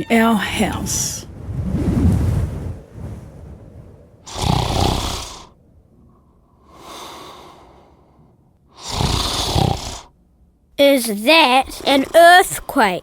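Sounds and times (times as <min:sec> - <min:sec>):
man snoring: 0:04.3 - 0:05.5, 0:08.8 - 0:10.1.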